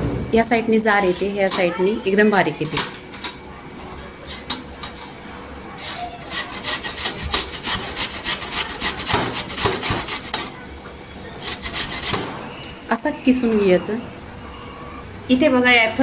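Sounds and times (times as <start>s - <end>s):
apple grated on a hand grater: 1.0s - 2.1s, 4.0s - 10.6s, 11.3s - 12.6s.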